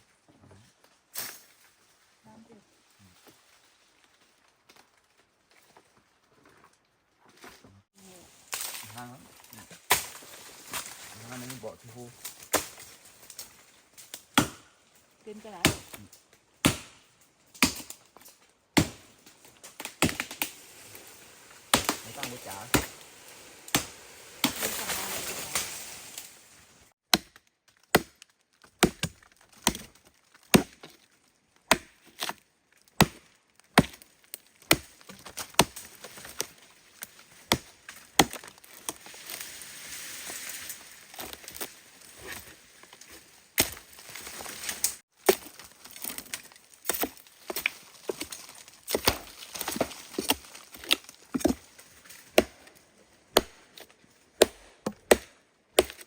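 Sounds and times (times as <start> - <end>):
blade chopping into tree trunk: 9.9 - 10.9, 14.4 - 14.7, 15.6 - 16.0, 16.6 - 17.0, 17.6 - 18.0, 18.8 - 19.1, 19.7 - 20.7, 21.7 - 23.0, 23.7 - 26.1, 27.1 - 30.9, 31.7 - 32.4, 33.0 - 36.5, 37.5 - 39.0, 43.6 - 51.7, 52.3 - 52.7, 53.3 - 56.0.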